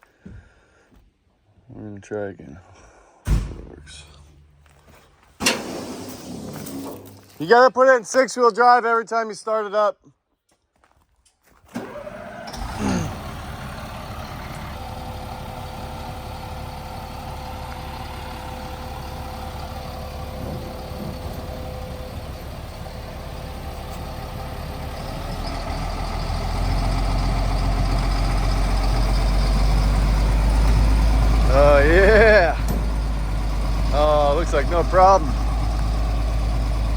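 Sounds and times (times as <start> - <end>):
truck engine running: 11.7 - 36.9.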